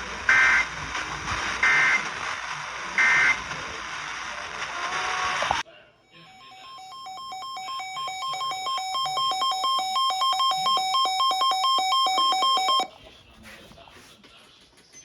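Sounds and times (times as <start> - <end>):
two-note emergency alert beep: 6.2 - 12.9.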